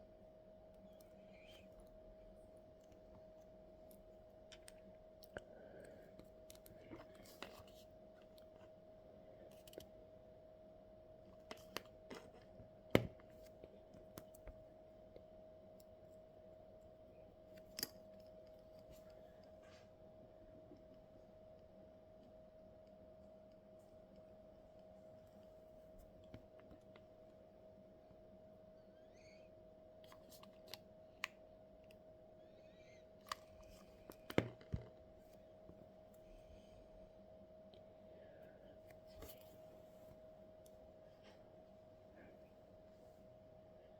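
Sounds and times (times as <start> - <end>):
faint steady hum: 0.0 - 43.9
faint chirping squeaks: 28.8 - 29.7, 32.4 - 33.2.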